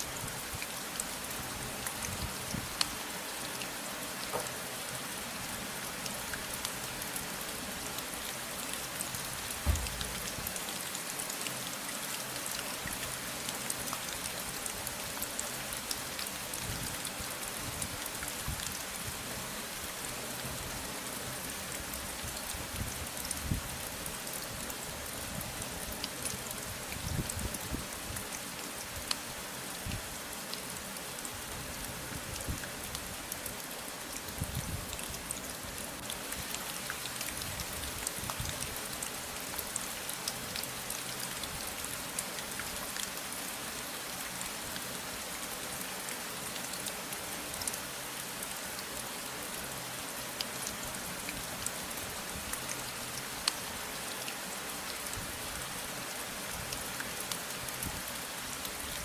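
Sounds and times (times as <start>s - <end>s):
steady rain falling: 0.0s - 59.0s
soft low thud: 9.6s - 10.3s.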